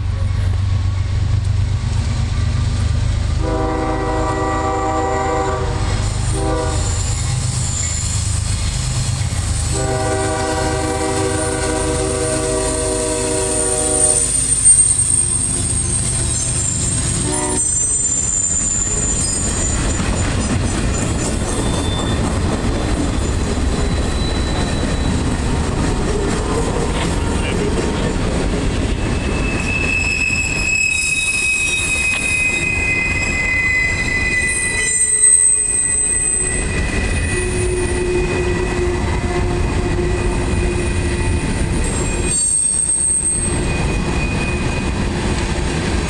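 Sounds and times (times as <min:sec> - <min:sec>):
train clatter rolling past: 0:00.0 - 0:35.6, 0:36.3 - 0:46.0
locomotive air horn blasts: 0:03.4 - 0:07.1, 0:09.7 - 0:14.6, 0:17.1 - 0:18.1
faint high wheel squeal: 0:06.4 - 0:25.6, 0:28.8 - 0:45.2.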